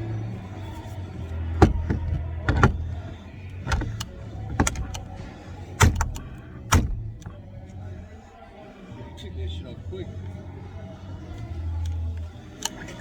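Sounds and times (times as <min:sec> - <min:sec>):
low steady hum: 0:00.0 - 0:13.0
sharp clicks and knocks: 0:01.6 - 0:05.2, 0:05.8 - 0:07.4.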